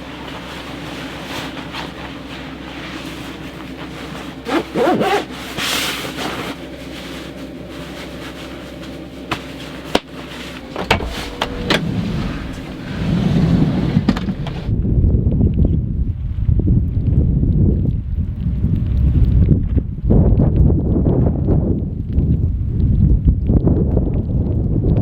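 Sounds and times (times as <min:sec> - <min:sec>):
low hum: 0:06.7 - 0:15.6
wind buffeting microphone: 0:10.6 - 0:25.0.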